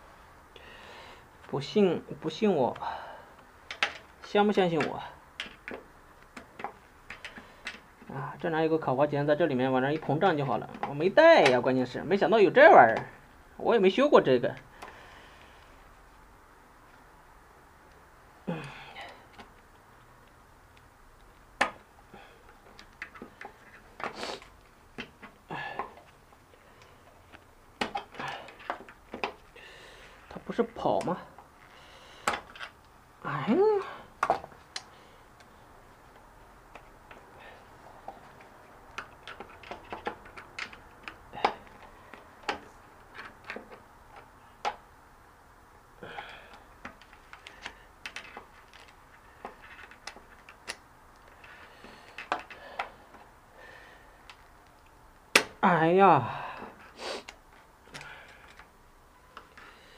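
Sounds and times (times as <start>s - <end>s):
person sighing: 18.4s - 19.2s, 25.5s - 26.0s, 33.2s - 34.1s, 46.0s - 46.6s, 56.1s - 57.3s.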